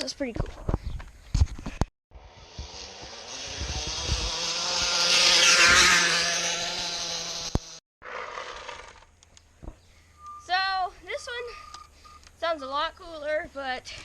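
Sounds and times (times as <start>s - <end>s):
can buzzing on spinning bicycle tyre: 2.2s - 9.1s.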